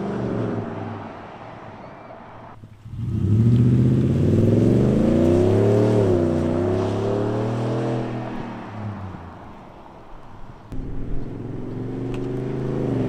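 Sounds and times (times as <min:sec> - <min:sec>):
truck exhaust accelerating: 0:02.5 - 0:09.7.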